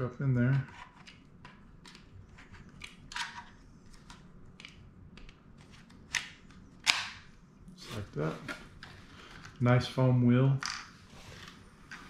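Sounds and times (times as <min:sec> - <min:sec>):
plastic clicks and handling: 0:00.6 - 0:07.2.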